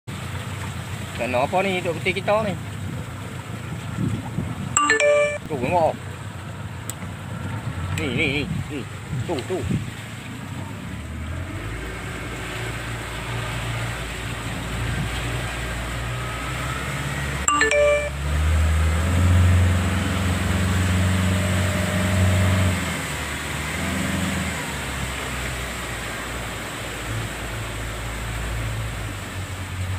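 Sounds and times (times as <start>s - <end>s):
boat engine running: 0.1s - 29.9s
short ringing ding: 4.8s - 5.5s, 17.5s - 18.2s.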